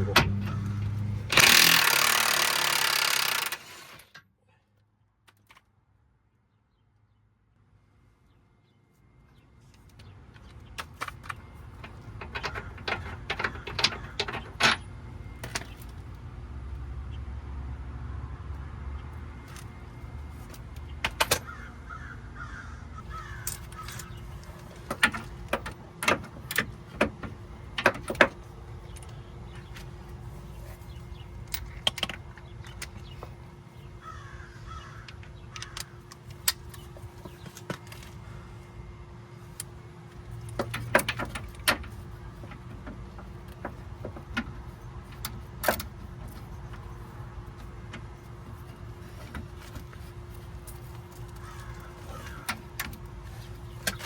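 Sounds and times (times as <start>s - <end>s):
hand tools clanking on metal: 11.8s - 14.9s, 40.4s - 49.9s
crows cawing: 21.4s - 24.0s, 34.0s - 36.0s, 51.4s - 52.6s.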